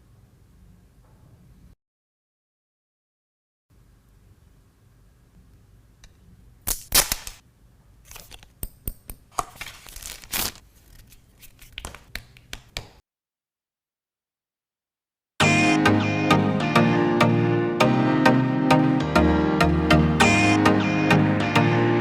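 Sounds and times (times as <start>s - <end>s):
packaging tearing: 6.7s - 7.4s, 9.3s - 12.2s
packaging clicks and crinkles: 9.3s - 12.2s.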